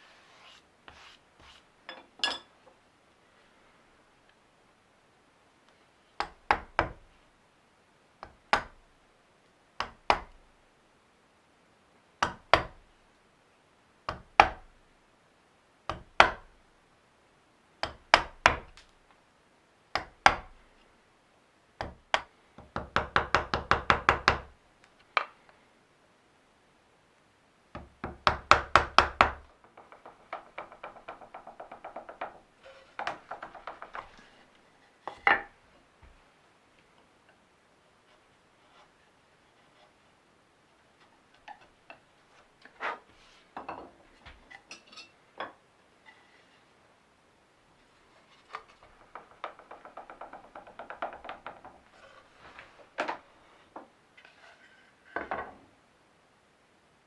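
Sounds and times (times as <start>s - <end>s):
hand tool knocking on wood: 6.2s - 7.0s, 9.8s - 10.4s, 12.2s - 12.8s, 19.9s - 20.6s, 21.8s - 24.5s, 27.8s - 34.4s, 48.8s - 51.9s.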